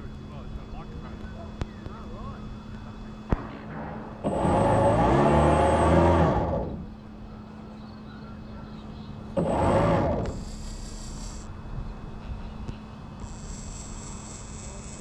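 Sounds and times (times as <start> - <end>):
model boat motor whining: 4.2 - 7.3, 9.1 - 11.5, 13.2 - 15.0.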